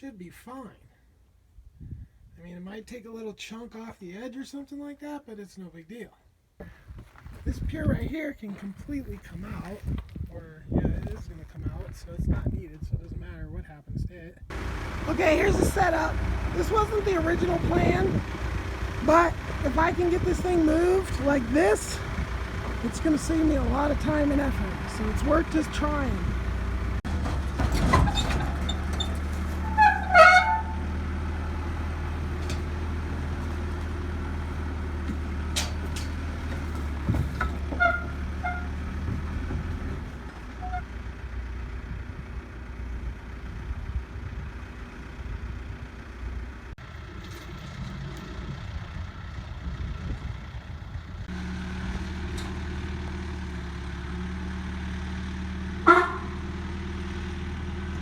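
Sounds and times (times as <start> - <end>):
backhoe engine running: 14.5 - 58.0
short high squeals: 27.8 - 30.9, 37.7 - 38.8.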